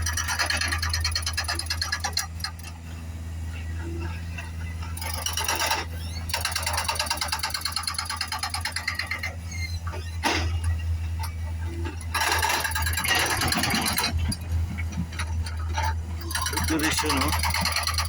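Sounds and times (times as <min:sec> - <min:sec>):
diesel engine droning: 0:02.2 - 0:06.7, 0:09.0 - 0:18.0.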